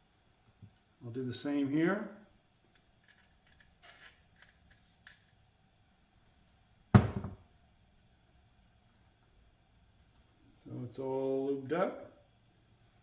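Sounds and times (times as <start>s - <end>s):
small parts clicking: 2.7s - 5.4s
sharp thunk: 7.0s - 7.4s.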